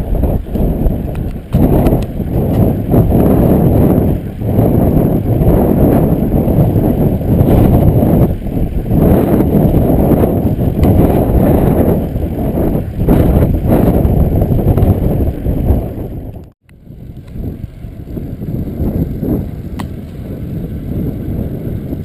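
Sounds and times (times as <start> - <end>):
wind buffeting microphone: 0.0 - 22.0.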